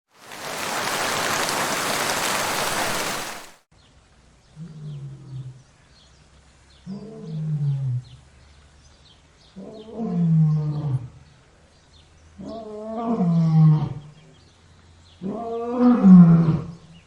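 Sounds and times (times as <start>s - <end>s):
loud even hiss: 0.2s - 3.6s.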